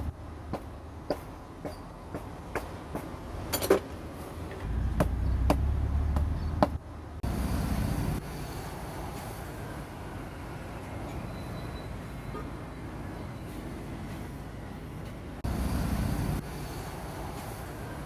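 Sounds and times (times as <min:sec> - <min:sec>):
low rumble: 0:04.6 - 0:08.2.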